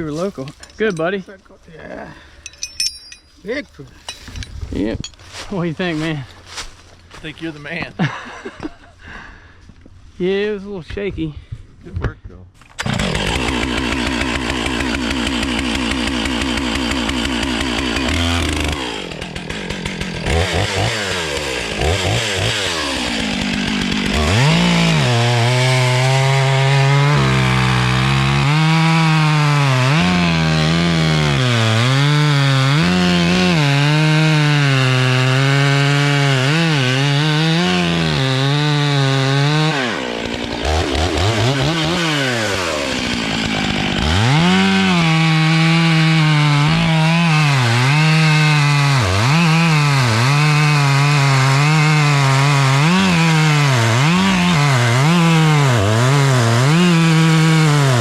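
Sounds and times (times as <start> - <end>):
chainsaw revving and cutting wood: 12.8 - 58.0.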